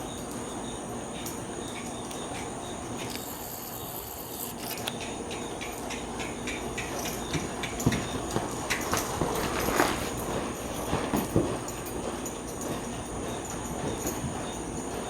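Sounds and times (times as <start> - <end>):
high insect-like chirr: 0.0 - 8.8
light hoof clicks: 1.1 - 15.0
horse hooves scuffing on footing: 4.8 - 15.0.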